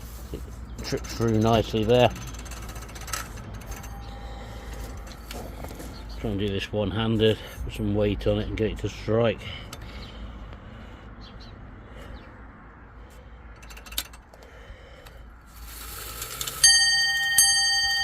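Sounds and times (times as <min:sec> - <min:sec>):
clock gear train whirring: 0:00.8 - 0:05.5, 0:15.5 - 0:18.0
clock mechanism clicks: 0:00.9 - 0:04.2, 0:15.6 - 0:17.5
hammer striking bell: 0:16.6 - 0:18.0.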